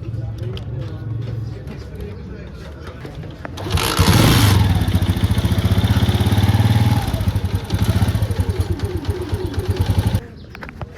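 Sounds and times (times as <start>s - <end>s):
motorcycle engine idling: 3.5s - 10.3s.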